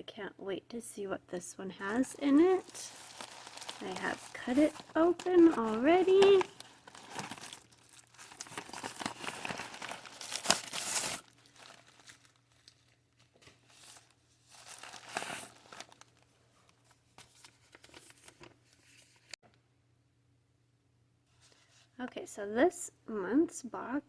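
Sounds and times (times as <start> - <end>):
soft rustling: 1.7 - 19.4
packaging crinkling and tearing: 1.8 - 16.3.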